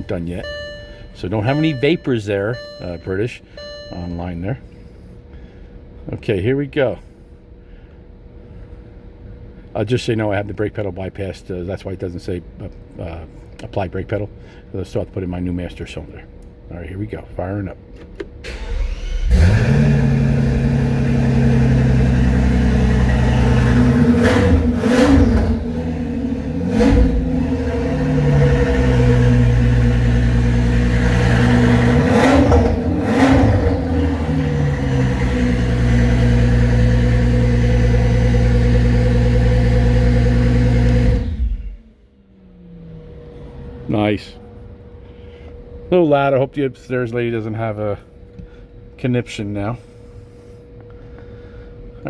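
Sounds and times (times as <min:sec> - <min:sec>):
car engine starting: 0:00.0 - 0:04.6, 0:18.4 - 0:45.6
car engine idling: 0:00.0 - 0:05.0, 0:18.6 - 0:45.6
engine revving: 0:00.4 - 0:04.1, 0:18.5 - 0:44.0.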